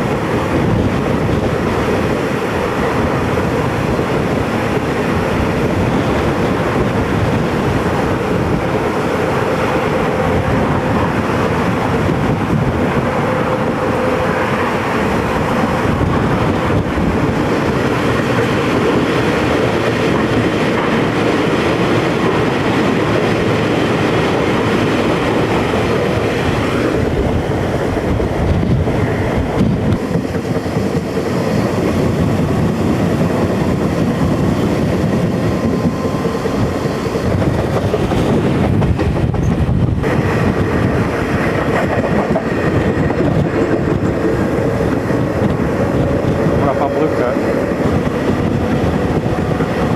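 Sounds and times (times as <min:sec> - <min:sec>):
train wheels rumbling on rails: 0:00.0 - 0:49.9.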